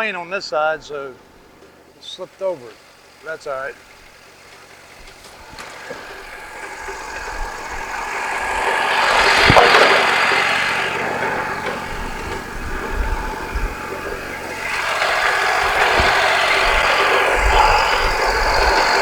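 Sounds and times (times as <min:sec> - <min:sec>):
sawmill humming: 0:00.0 - 0:19.0.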